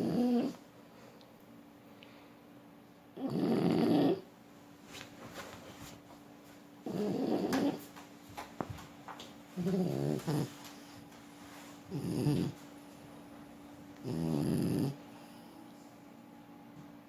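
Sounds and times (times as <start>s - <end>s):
dog snoring: 0.0s - 0.6s, 3.2s - 4.3s, 6.8s - 7.8s, 9.6s - 11.0s, 11.9s - 12.6s, 14.0s - 15.4s.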